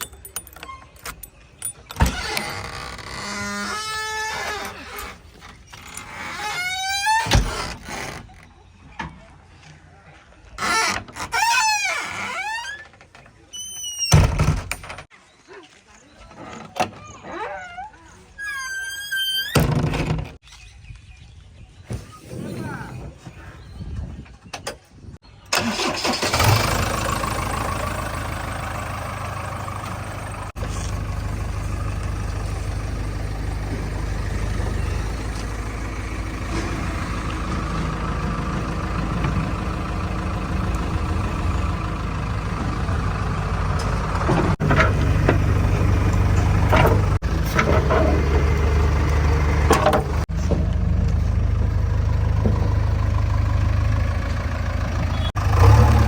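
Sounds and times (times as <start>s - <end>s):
diesel engine running: 25.6s - 56.0s.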